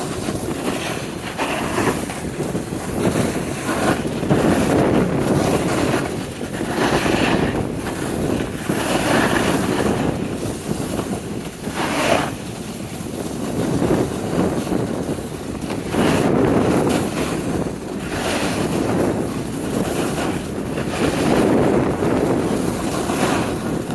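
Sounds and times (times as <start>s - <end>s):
wind buffeting microphone: 0.0s - 23.9s.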